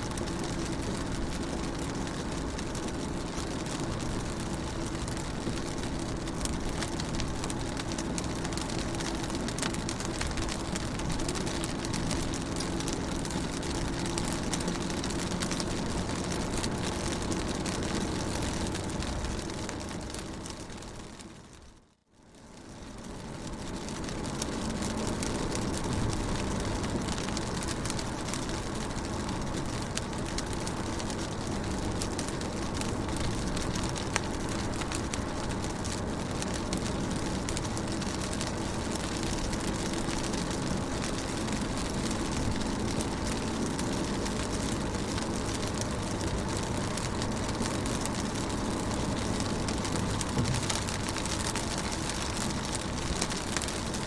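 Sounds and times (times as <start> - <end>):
rain pattering on car: 0.0 - 54.0.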